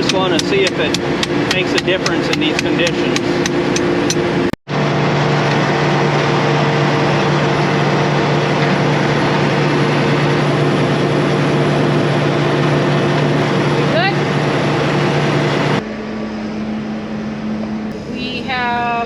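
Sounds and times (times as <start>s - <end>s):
hammer on metal: 0.0s - 4.2s
harvest machinery engine drone: 0.0s - 19.0s.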